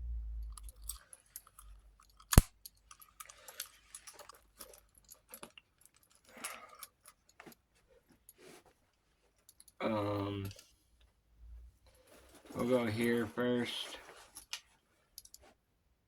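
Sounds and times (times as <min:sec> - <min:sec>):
rustling of small items: 0:00.4 - 0:09.8, 0:10.5 - 0:15.7.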